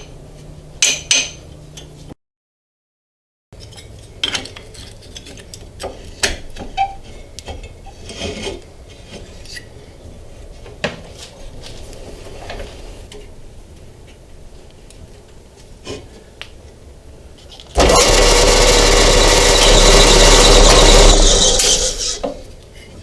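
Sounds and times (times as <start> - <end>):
tools scraping: 17.8 - 22.5.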